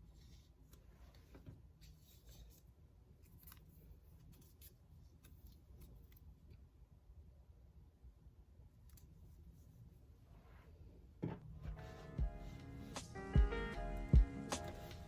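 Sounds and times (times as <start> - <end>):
faint small clicks and rustles: 0.1 - 6.7.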